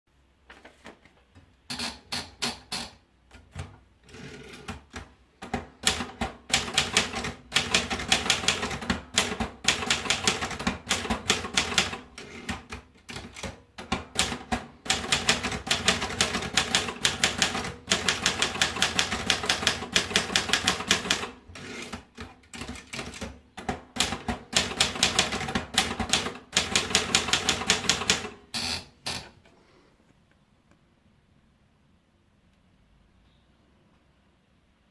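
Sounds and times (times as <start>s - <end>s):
manual typewriter keystrokes: 1.7s - 29.3s.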